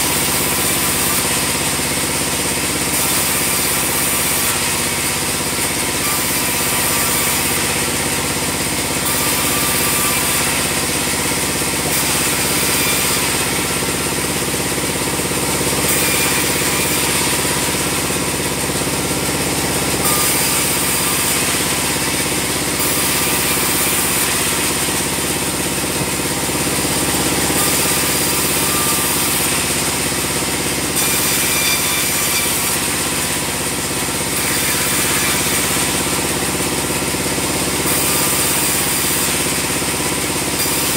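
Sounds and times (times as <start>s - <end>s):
sawmill motor and blade drone: 0.0s - 40.9s.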